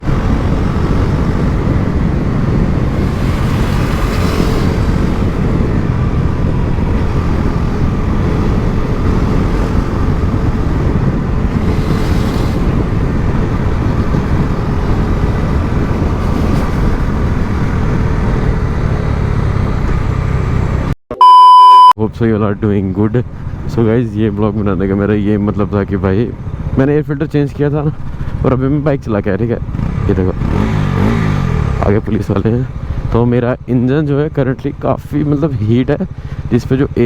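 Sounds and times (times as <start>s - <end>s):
motorcycle engine rumble: 0.0s - 21.9s, 23.2s - 37.0s
road noise: 0.0s - 37.0s.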